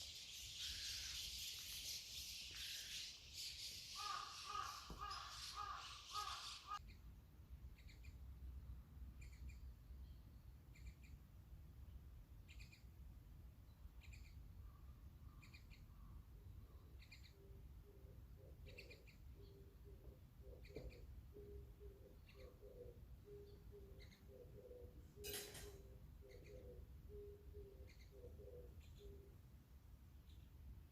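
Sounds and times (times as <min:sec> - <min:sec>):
harsh bird call: 0:02.6 - 0:06.8.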